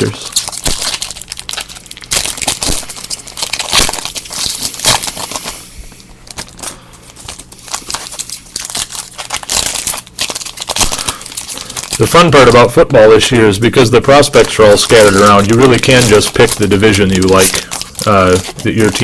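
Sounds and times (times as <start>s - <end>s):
packaging crinkling: 0.0s - 19.0s.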